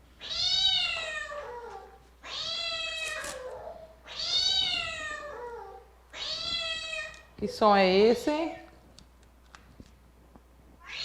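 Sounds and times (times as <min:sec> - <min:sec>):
cat meowing: 0:00.2 - 0:07.3, 0:10.8 - 0:11.0.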